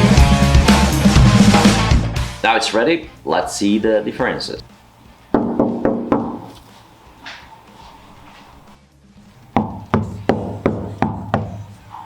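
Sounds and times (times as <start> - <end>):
knocking on sheet-metal floor: 5.4 - 6.5, 9.6 - 11.6.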